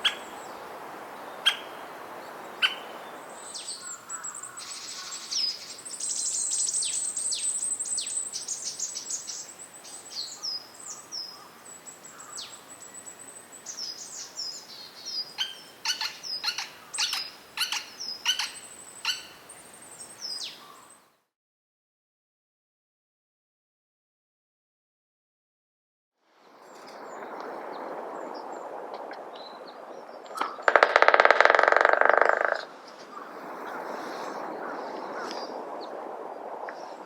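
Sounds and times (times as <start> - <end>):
woodpecker calling: 1.4 - 1.8, 2.6 - 2.9, 15.4 - 19.5, 30.3 - 33.8.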